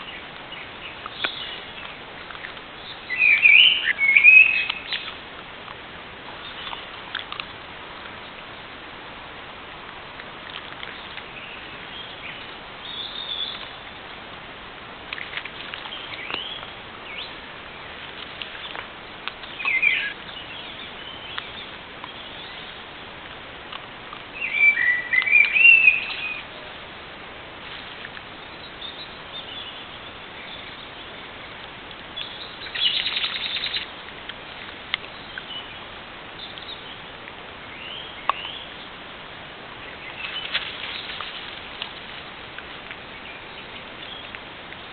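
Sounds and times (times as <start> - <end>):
birds chirping and warbling: 0.0 - 5.3, 6.4 - 7.5, 10.7 - 14.0, 15.7 - 23.0, 24.2 - 26.9, 28.2 - 39.0, 39.7 - 44.9
steady background hiss: 0.0 - 44.9.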